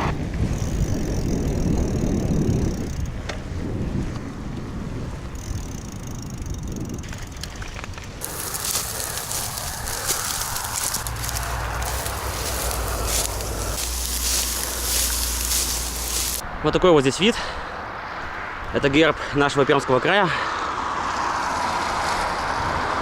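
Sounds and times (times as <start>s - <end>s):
bicycle rolling rumble: 0.0s - 16.4s
wind on microphone: 0.0s - 16.4s
crackling hiss: 8.2s - 16.4s.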